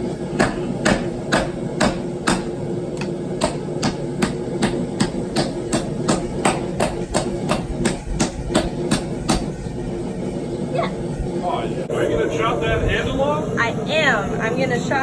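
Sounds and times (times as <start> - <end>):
hammer striking hot steel: 0.0 - 10.3.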